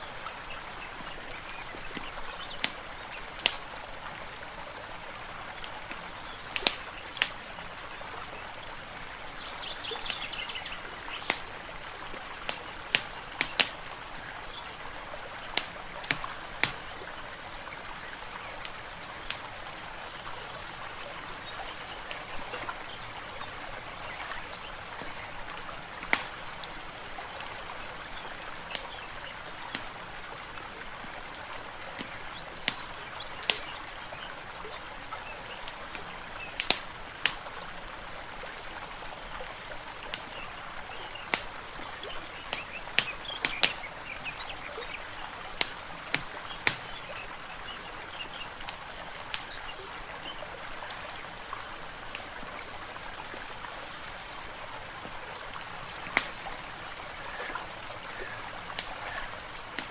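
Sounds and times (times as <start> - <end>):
water trickling: 0.0 - 59.9
fire crackling and popping: 11.2 - 11.5, 55.0 - 59.9.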